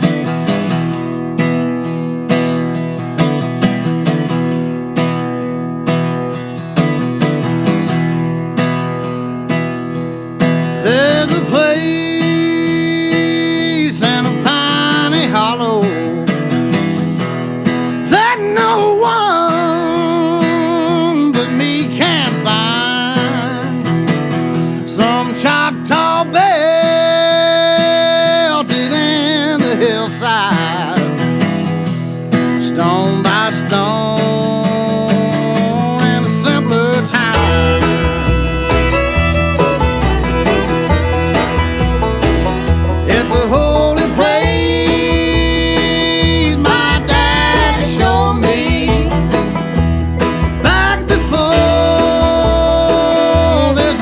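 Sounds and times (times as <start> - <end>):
strummed acoustic guitar: 0.0 - 54.0
person singing: 32.8 - 38.7, 43.0 - 49.5, 50.6 - 54.0.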